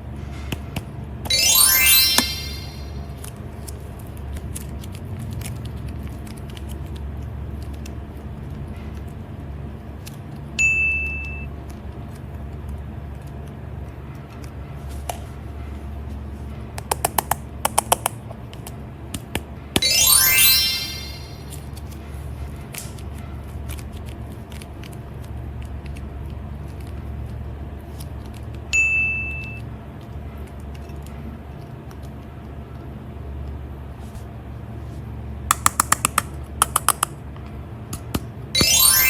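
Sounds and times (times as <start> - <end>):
bright ding: 1.3 - 3.1, 19.8 - 21.6, 38.6 - 39.0.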